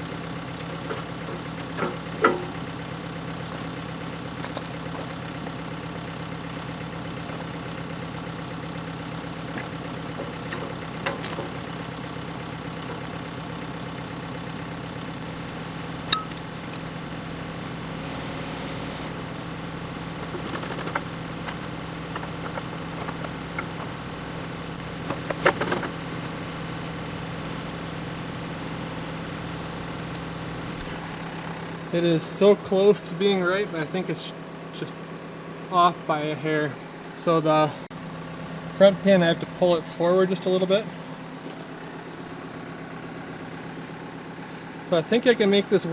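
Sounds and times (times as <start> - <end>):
diesel engine idling: 0.0 - 45.9
metal clanks: 0.1 - 2.7, 16.1 - 17.1, 19.1 - 27.0.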